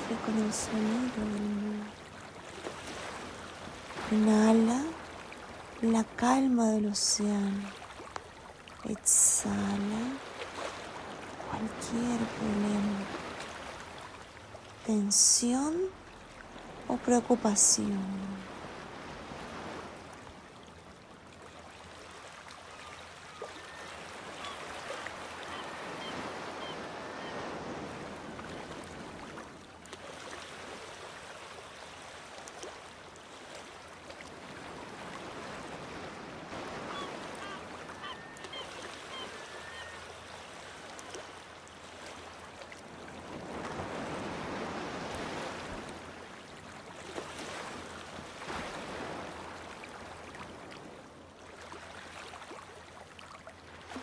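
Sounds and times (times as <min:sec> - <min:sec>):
short bird calls: 0:36.8 - 0:40.1.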